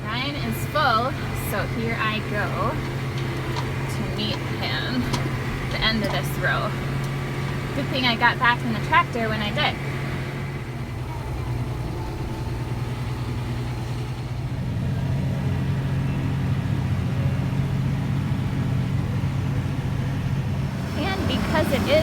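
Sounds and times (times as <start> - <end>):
tractor diesel engine running: 0.0 - 22.0.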